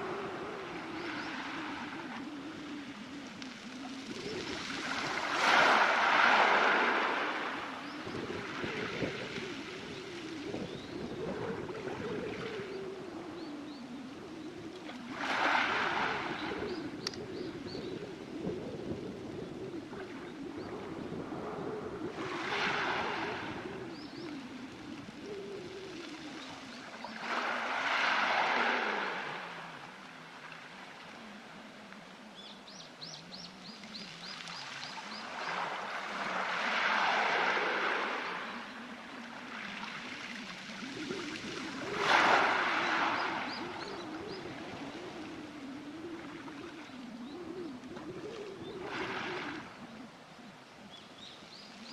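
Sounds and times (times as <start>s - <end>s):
waves on a pebble beach: 0.0s - 13.6s, 15.1s - 17.8s, 22.0s - 29.9s, 34.2s - 46.2s
waves washing onto pebbles: 4.1s - 7.7s, 41.7s - 43.9s.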